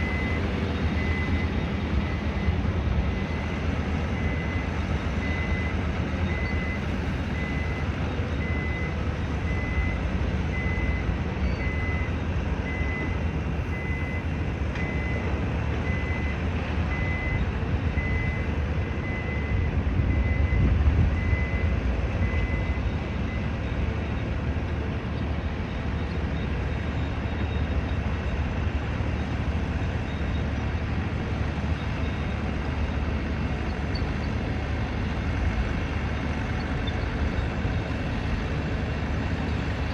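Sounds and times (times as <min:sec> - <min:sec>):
reversing alarm beeping: 0:00.0 - 0:03.5, 0:04.1 - 0:23.8
heavy engines and traffic rumble: 0:00.0 - 0:39.9.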